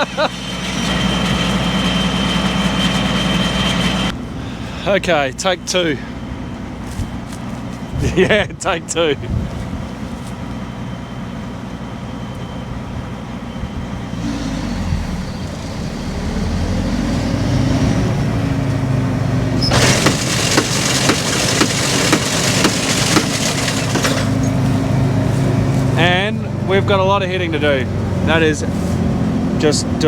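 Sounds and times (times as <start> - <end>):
combine harvester running: 0.0 - 30.0
loud rushing of harvester header: 19.5 - 24.8
sharp knocking: 19.8 - 24.4.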